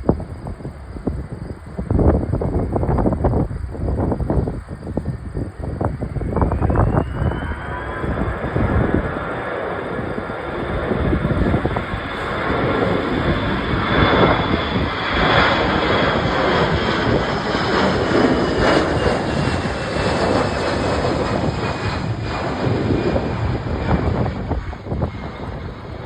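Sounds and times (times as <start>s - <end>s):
faint high whine: 0.0s - 26.0s
jet airliner flying past: 0.0s - 26.0s
wind rumbling on microphone: 0.0s - 26.0s.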